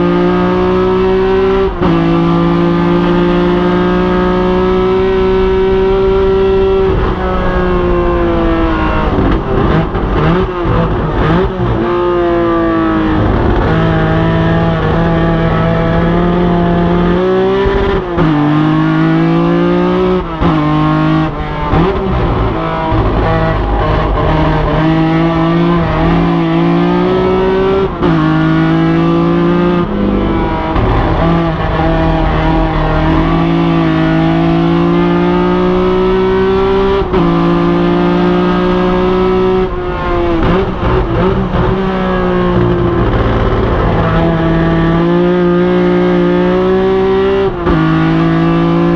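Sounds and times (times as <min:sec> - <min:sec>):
race car engine revving through gears: 0:00.0 - 0:48.9.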